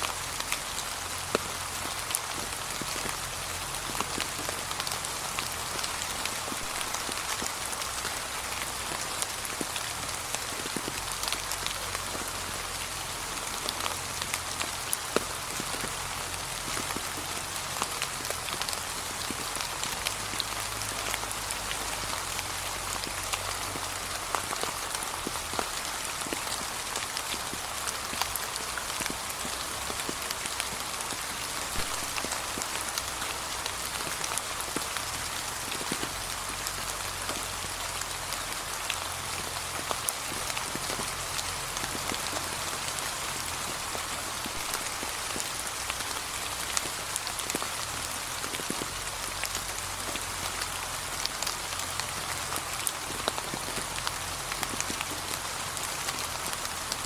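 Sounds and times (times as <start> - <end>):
rain pattering on leaves: 0.0 - 57.0.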